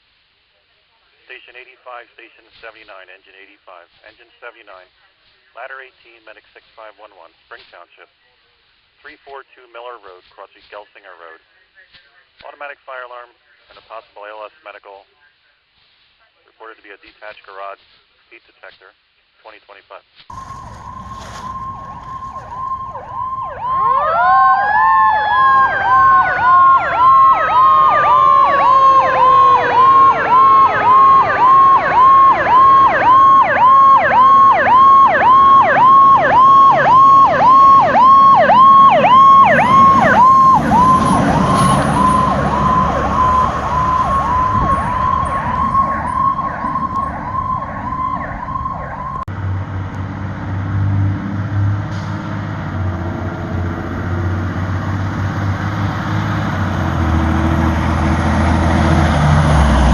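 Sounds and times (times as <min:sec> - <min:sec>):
electronic siren cycling: 0:20.3 - 0:49.3
vehicle engine rumble: 0:20.3 - 0:59.9.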